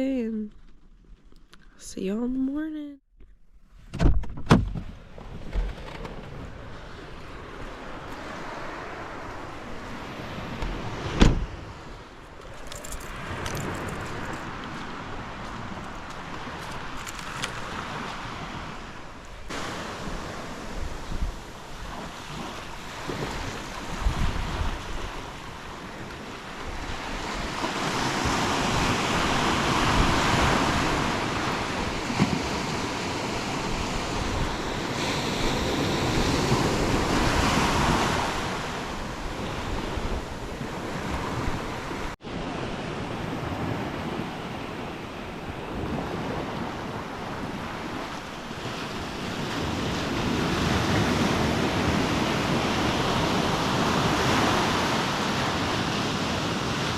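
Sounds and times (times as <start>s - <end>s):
ocean surf breaking: 5.3s - 12.3s, 13.1s - 56.9s
wind buffeting microphone: 13.0s - 56.9s.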